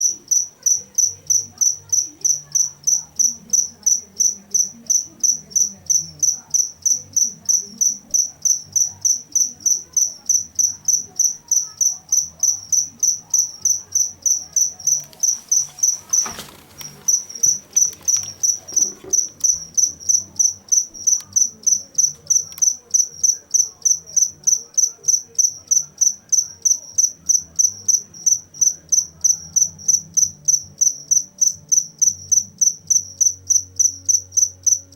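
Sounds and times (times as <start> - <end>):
cricket chirping: 0.0 - 34.9
brief rustle: 15.0 - 19.6.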